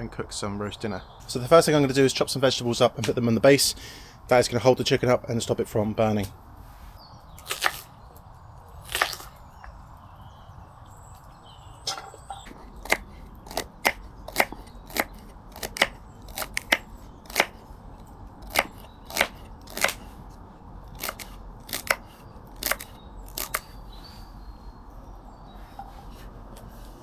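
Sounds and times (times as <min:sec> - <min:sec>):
knife chopping vegetables: 0:12.4 - 0:17.6, 0:18.4 - 0:20.2, 0:20.9 - 0:23.7.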